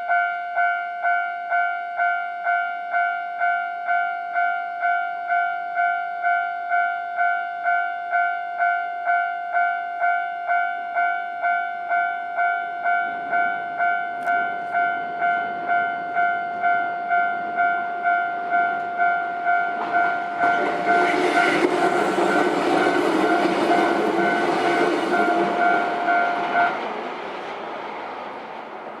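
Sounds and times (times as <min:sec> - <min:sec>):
level-crossing warning bell: 0:00.0 - 0:27.0
train passing: 0:11.4 - 0:29.0.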